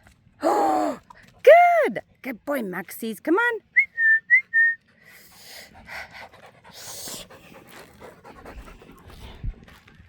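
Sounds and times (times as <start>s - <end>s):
dog panting: 5.1s - 9.9s.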